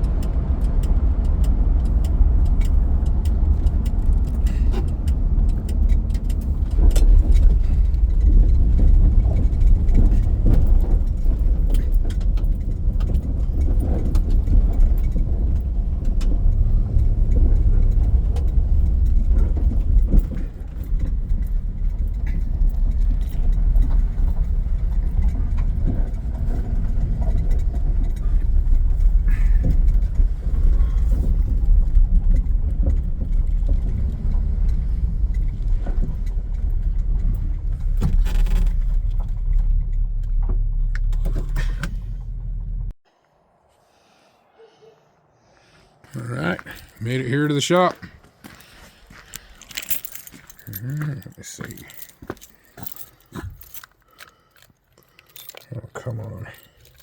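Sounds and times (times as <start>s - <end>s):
car engine rumble inside cabin: 0.0s - 43.0s.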